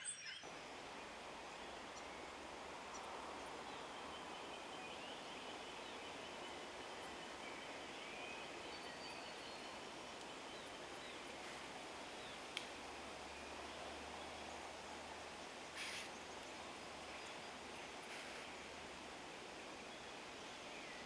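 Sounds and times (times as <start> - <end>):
steady hiss: 0.4 - 21.0
bird calls and chirps: 1.6 - 12.5, 15.6 - 18.8.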